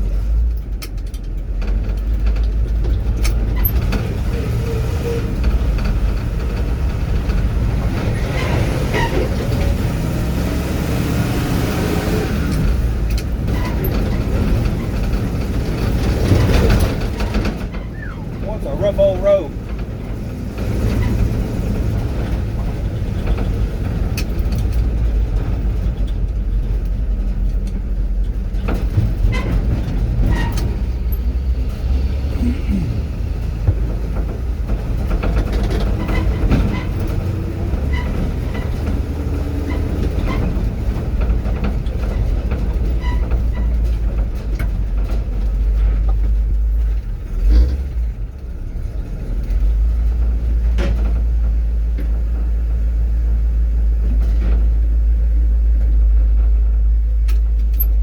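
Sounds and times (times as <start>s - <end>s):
truck body rattling and knocking: 0.0s - 58.0s
truck engine and road rumble: 0.0s - 58.0s.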